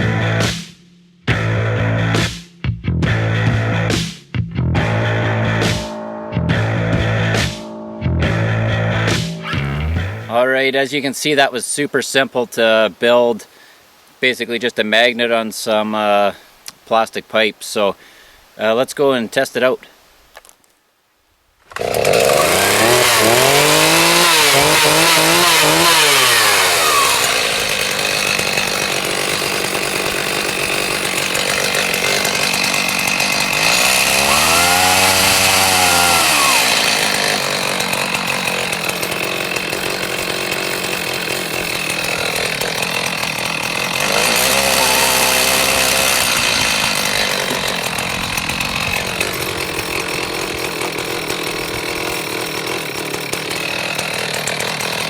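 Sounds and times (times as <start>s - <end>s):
chainsaw revving: 9.0s - 10.3s, 21.7s - 55.0s.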